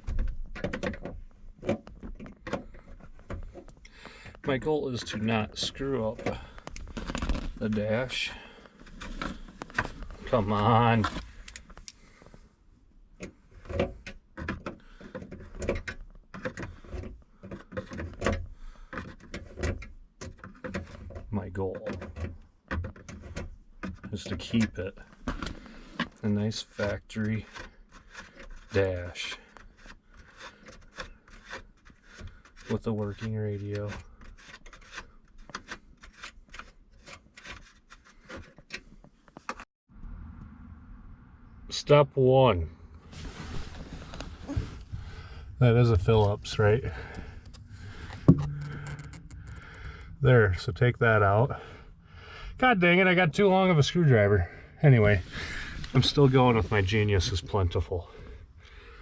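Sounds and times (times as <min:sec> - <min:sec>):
hand tool clicking and scraping: 0:46.2 - 0:50.1.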